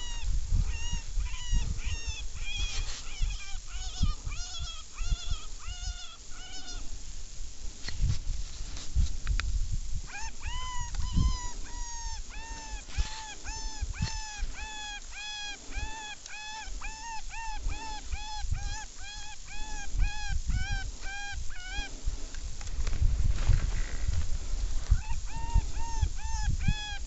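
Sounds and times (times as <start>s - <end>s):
electronic animal distress cries: 0.0s - 6.8s, 10.1s - 21.9s, 25.0s - 27.0s.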